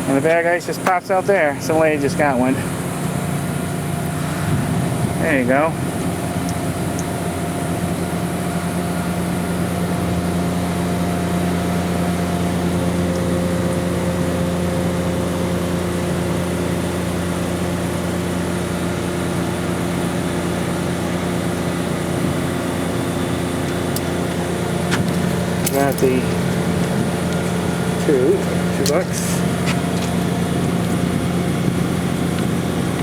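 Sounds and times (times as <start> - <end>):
mechanical hum with held tones: 0.0 - 33.0
broad rushing noise: 19.8 - 33.0.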